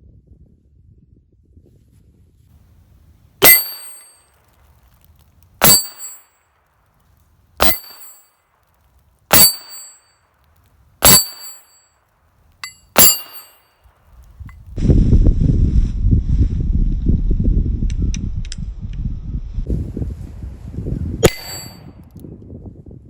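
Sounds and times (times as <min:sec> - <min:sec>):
revolver shots with metallic ring: 0:03.4 - 0:04.2, 0:05.6 - 0:06.4, 0:07.6 - 0:08.3, 0:09.3 - 0:10.1, 0:11.0 - 0:11.9, 0:12.6 - 0:13.7, 0:21.2 - 0:21.9.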